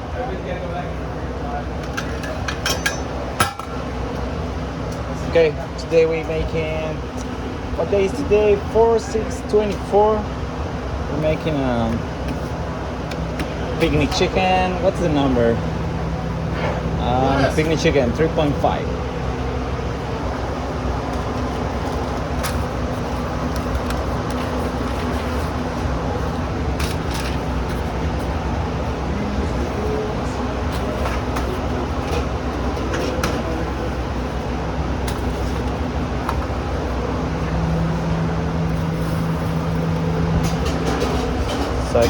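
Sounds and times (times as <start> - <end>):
low mechanical drone: 0.0 - 42.0
steady hum: 0.0 - 42.0
kitchen equipment rumbling: 39.6 - 42.0.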